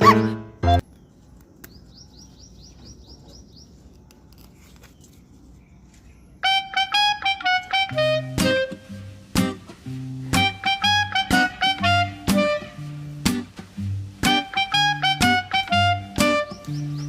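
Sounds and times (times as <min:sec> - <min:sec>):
loud brass-like music: 0:06.6 - 0:09.7, 0:10.3 - 0:13.4, 0:14.2 - 0:16.8.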